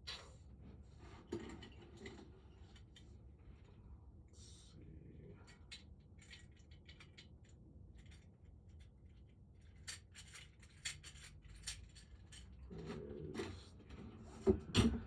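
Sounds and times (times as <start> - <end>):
small metal objects clicking: 5.7 - 12.6.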